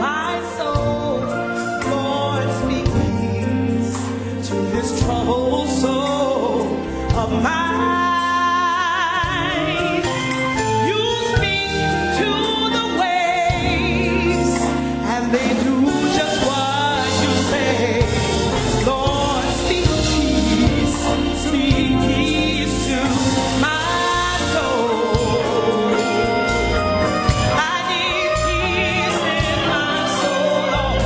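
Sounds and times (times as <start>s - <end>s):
person singing with vibrato: 0.0s - 31.0s
steady bass accompaniment: 0.0s - 31.0s.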